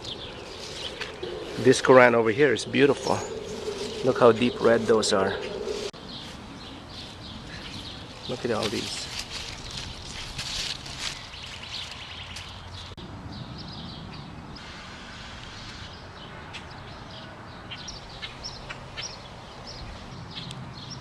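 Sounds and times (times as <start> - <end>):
low steady rumble: 0.0 - 6.0.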